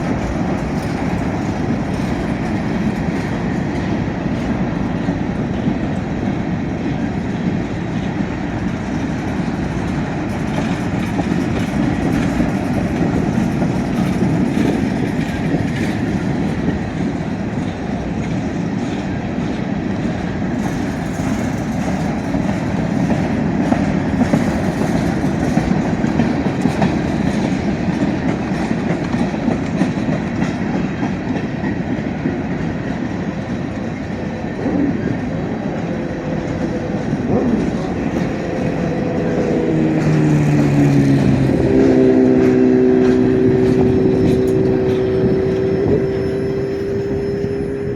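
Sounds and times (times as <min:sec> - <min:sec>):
wheels clicking over rail joints: 0:00.0 - 0:47.9
freight cars rumbling past: 0:34.7 - 0:47.9.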